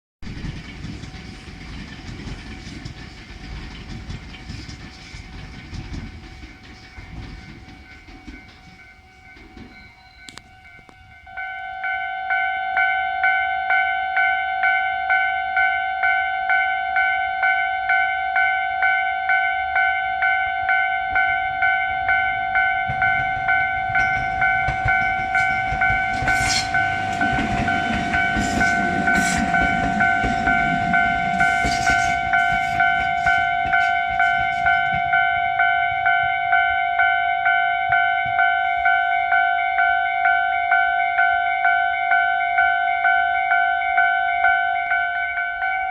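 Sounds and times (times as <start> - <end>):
train wheels clattering over rails: 0.2 - 11.2, 20.6 - 39.5.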